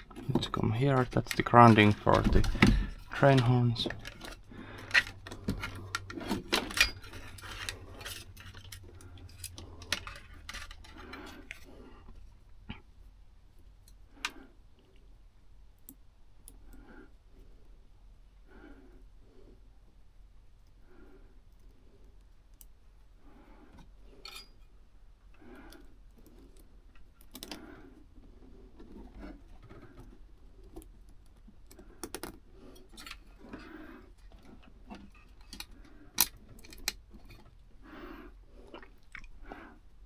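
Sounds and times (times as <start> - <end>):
small metallic clicks and rattles: 0.0 - 12.3, 25.6 - 27.6, 28.8 - 37.6.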